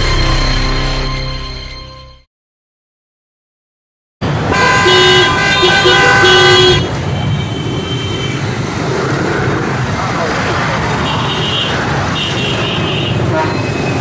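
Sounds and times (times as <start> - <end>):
street traffic noise: 4.2 - 14.0
vehicle horns honking: 4.5 - 8.4, 11.0 - 14.0.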